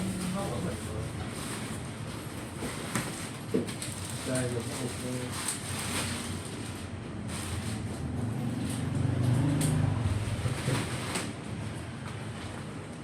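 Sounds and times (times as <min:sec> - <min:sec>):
motor vehicle engine hum: 0:07.0 - 0:13.0.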